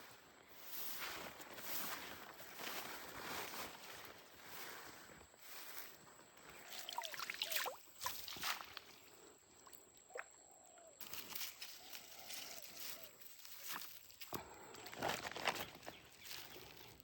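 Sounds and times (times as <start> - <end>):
small sharp splashes: 6.6 - 10.3.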